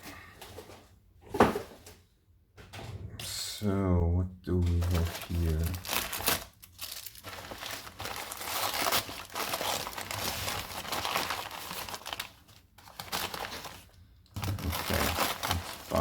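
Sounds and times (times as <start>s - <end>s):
packing material crinkling: 4.5s - 16.0s.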